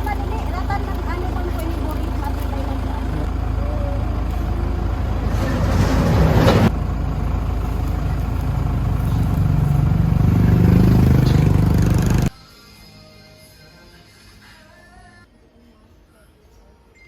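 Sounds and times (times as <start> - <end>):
vehicle engine running and revving: 0.0 - 12.3.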